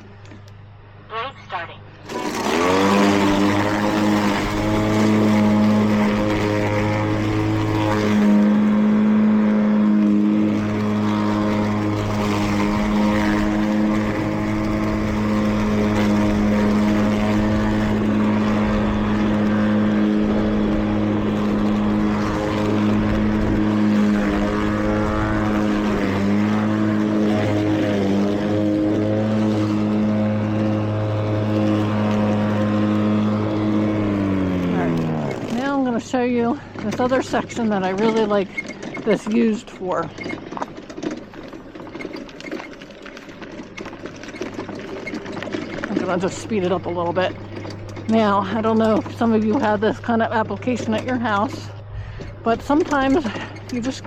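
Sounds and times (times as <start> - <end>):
electric mower blade whirring: 2.0 - 54.0.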